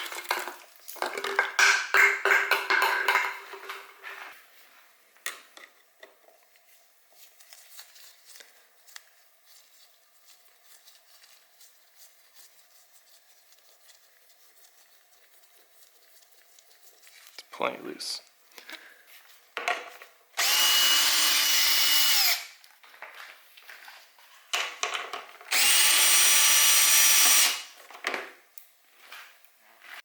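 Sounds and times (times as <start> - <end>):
plastic bottle clattering and crackling: 0.0 - 4.1.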